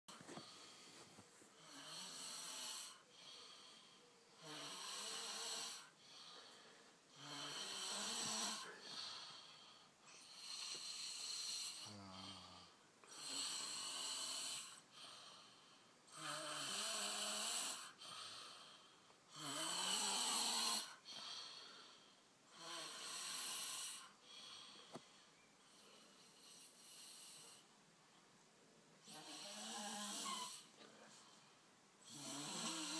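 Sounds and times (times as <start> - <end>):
people snoring: 1.6 - 3.8, 4.4 - 6.4, 7.1 - 24.7, 29.0 - 31.0, 32.0 - 32.9.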